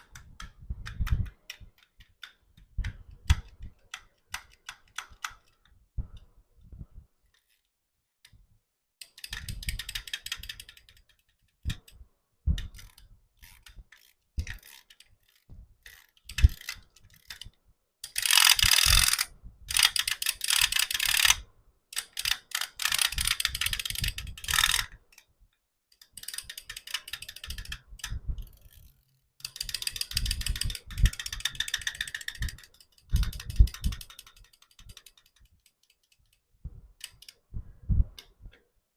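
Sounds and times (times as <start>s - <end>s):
toys clicking and rattling: 9.0s - 11.9s, 12.6s - 21.4s, 22.0s - 24.9s, 26.0s - 36.4s.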